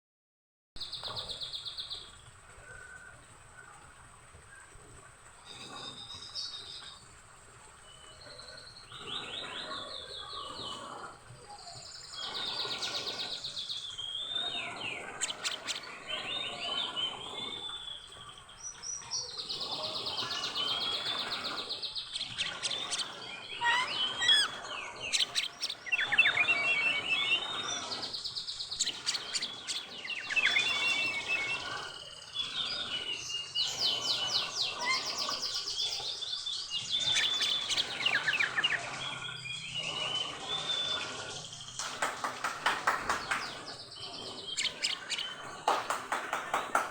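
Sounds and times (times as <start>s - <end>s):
bird singing whistles and trills: 11.6s - 46.9s.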